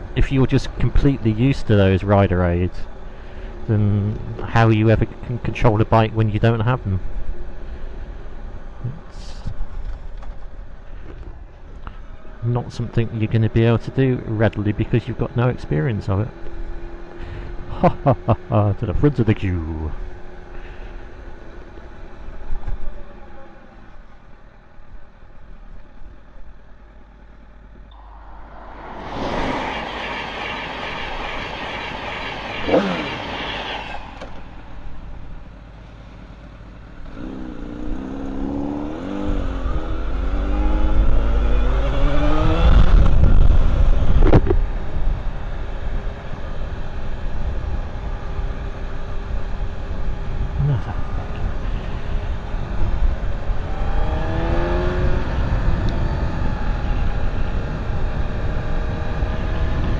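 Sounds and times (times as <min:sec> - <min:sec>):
motorcycle engine revving up: 0:27.9 - 0:35.3, 0:37.1 - 0:44.2, 0:50.6 - 0:59.9
wind rushing over microphone: 0:27.9 - 0:35.4, 0:39.3 - 0:45.4, 0:50.4 - 0:59.9.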